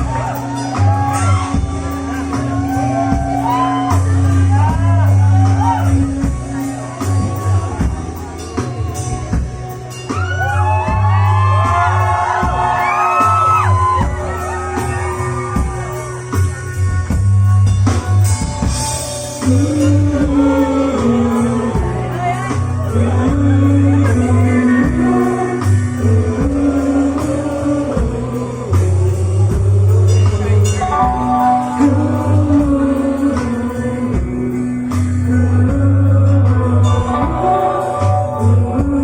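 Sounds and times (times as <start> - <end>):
live rock band playing: 0.0 - 39.0
person singing: 19.0 - 39.0.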